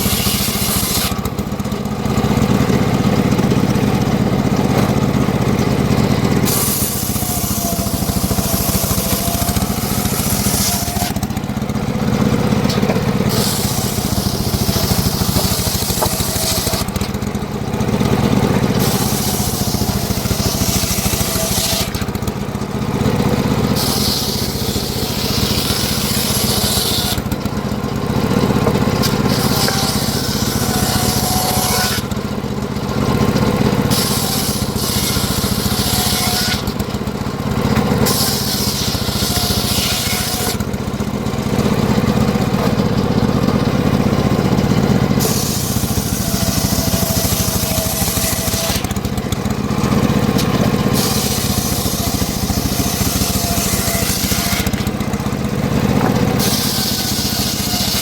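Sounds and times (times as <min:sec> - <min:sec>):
saw blade hissing through wood: 0:00.0 - 0:01.2, 0:06.4 - 0:11.2, 0:13.2 - 0:17.0, 0:18.8 - 0:22.0, 0:23.7 - 0:27.3, 0:29.0 - 0:32.1, 0:33.9 - 0:36.7, 0:38.0 - 0:40.6, 0:45.2 - 0:48.9, 0:50.9 - 0:54.8, 0:56.4 - 0:58.0
sawmill engine running: 0:00.0 - 0:58.0.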